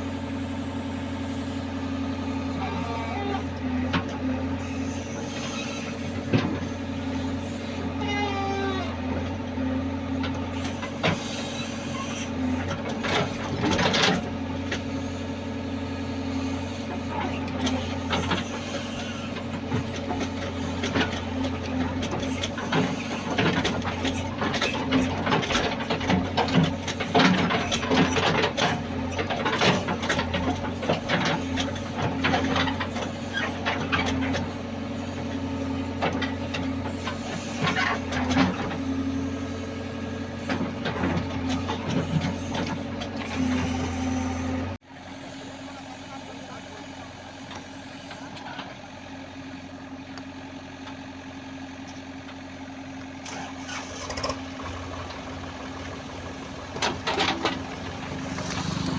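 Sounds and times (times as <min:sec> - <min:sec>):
excavator diesel engine running: 0:00.0 - 0:58.9.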